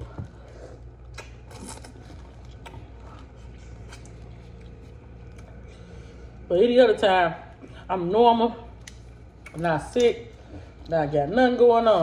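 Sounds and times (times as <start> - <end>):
steady low hum: 0.0 - 12.0
eating clicks and smacks: 1.0 - 3.3, 8.8 - 10.1.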